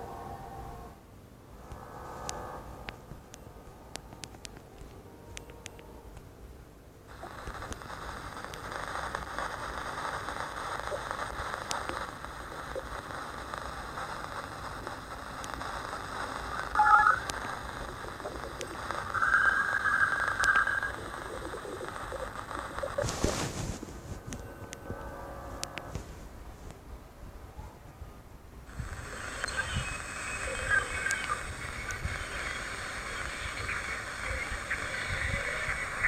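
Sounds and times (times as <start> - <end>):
static-like hiss: 0.0 - 36.0
crackles and clicks: 1.6 - 6.3, 7.0 - 26.8, 28.6 - 36.0
buzzing: 7.1 - 23.1.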